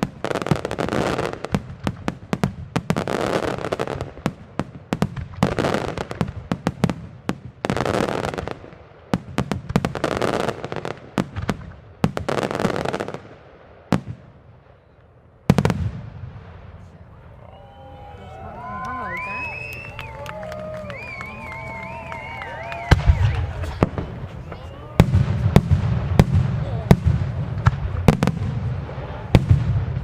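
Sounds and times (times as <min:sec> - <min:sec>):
firework salute bangs: 0:15.5 - 0:30.0.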